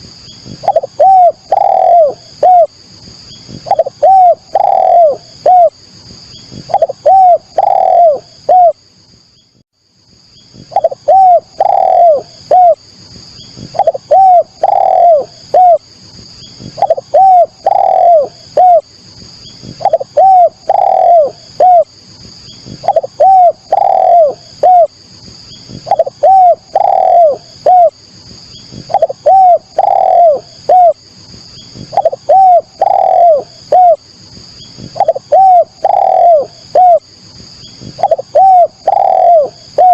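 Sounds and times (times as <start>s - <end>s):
dove cooing: 0.5s - 2.8s, 3.5s - 5.8s, 6.5s - 8.8s, 10.6s - 12.8s, 13.6s - 15.8s, 16.6s - 18.9s, 19.6s - 21.9s, 22.6s - 25.0s, 25.7s - 28.0s, 28.7s - 31.0s, 31.7s - 34.0s, 34.8s - 37.1s, 37.8s - 39.9s.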